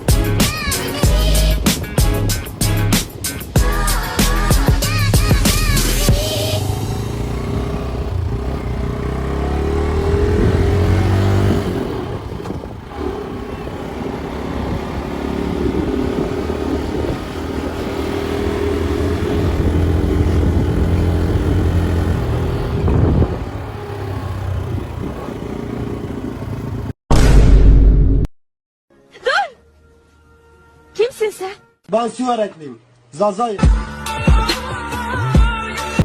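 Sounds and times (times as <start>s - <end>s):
motorcycle engine accelerating: 0.0s - 27.0s.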